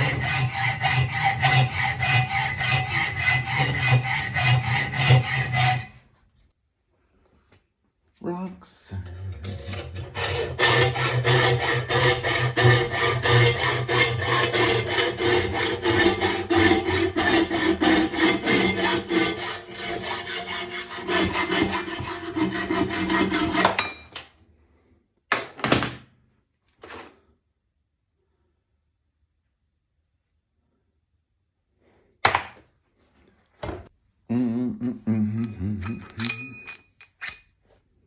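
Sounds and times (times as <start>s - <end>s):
saw cutting steel: 0.0s - 6.0s, 9.4s - 23.8s.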